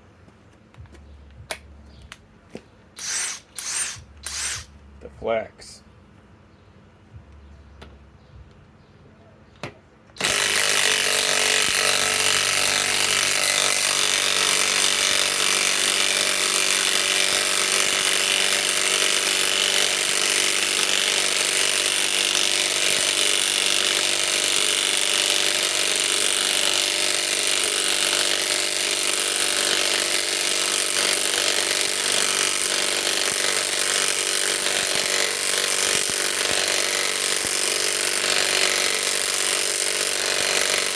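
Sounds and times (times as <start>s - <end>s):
impact wrench hammering: 3.0s - 4.8s, 10.2s - 40.9s.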